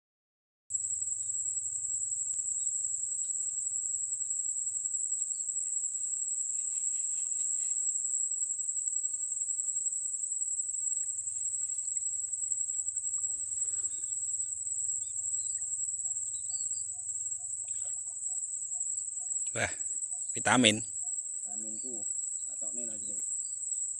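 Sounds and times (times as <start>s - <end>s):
insects trilling: 0.7s - 23.9s
rustle: 5.2s - 14.6s.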